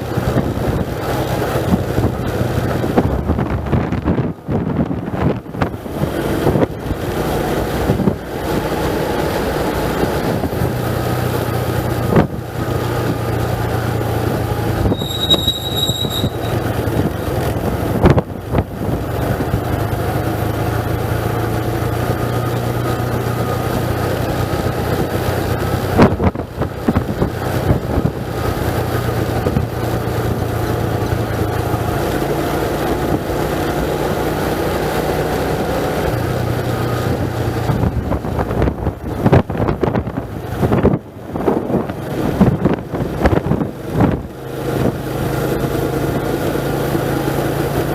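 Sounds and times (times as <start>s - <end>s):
road and wind noise: 0.0s - 47.9s
vehicle engine running: 0.0s - 47.9s
short high squeal: 14.8s - 16.8s.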